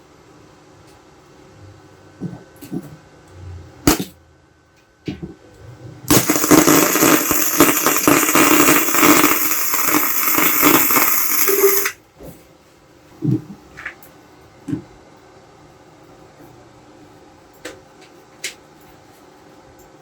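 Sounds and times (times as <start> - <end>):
welding arc crackling: 6.1 - 12.0.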